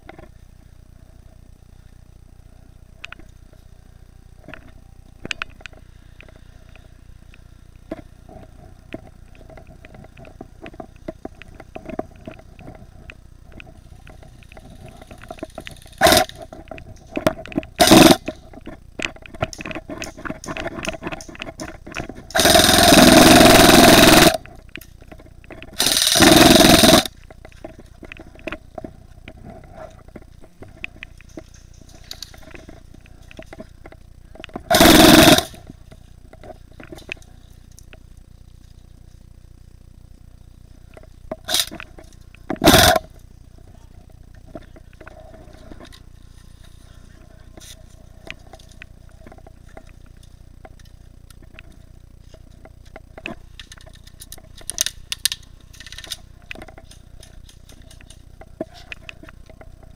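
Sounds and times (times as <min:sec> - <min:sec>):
faint clicks and crunches: 0:00.0 - 0:02.0, 0:03.0 - 0:03.8, 0:04.4 - 0:59.9
airsoft gun bursts: 0:15.8 - 0:16.4, 0:17.8 - 0:18.4, 0:22.3 - 0:24.4, 0:25.8 - 0:27.1, 0:34.7 - 0:35.6, 0:41.4 - 0:41.7, 0:42.6 - 0:43.1.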